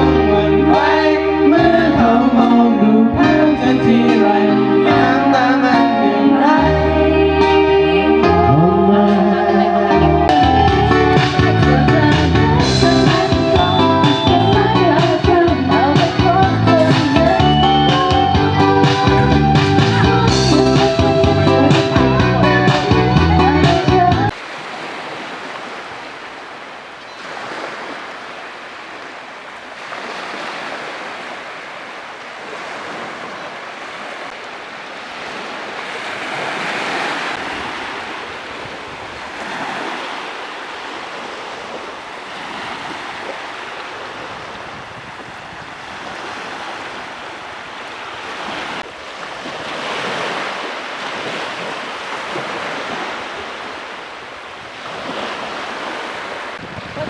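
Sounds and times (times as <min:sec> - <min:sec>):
sea waves breaking on beach: 0:10.7 - 0:22.0, 0:24.3 - 0:57.0.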